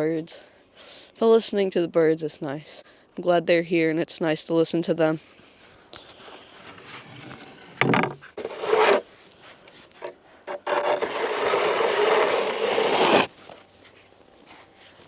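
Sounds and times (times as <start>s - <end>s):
snow shovel scraping ice: 6.1s - 9.1s, 10.0s - 13.5s.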